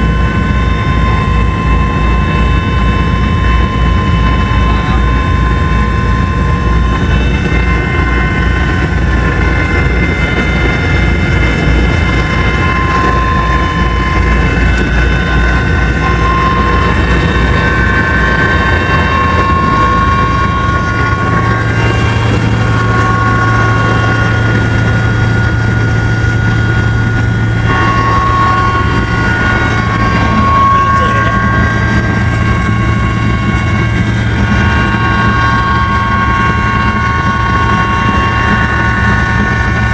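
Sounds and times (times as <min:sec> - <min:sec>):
helicopter rotor pulse: 0:00.0 - 0:39.9
helicopter turbine whine: 0:00.0 - 0:39.9.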